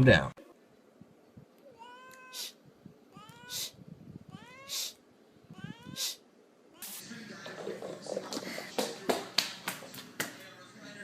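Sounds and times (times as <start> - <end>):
cat meowing: 1.6 - 7.0.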